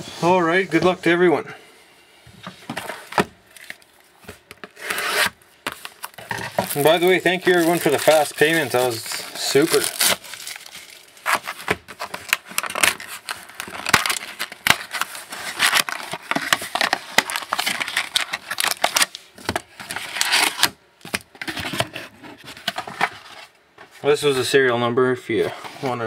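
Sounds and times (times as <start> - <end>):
cardboard rustling: 2.4 - 24.0
wrapper crinkling: 5.1 - 20.7.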